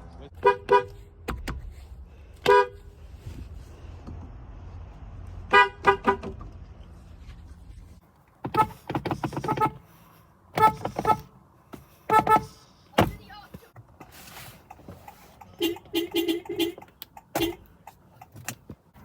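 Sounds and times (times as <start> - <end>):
car horn toots: 0.4 - 1.0, 2.4 - 2.8, 5.5 - 6.3, 8.5 - 9.8, 10.6 - 11.3, 12.1 - 12.6, 15.5 - 17.6.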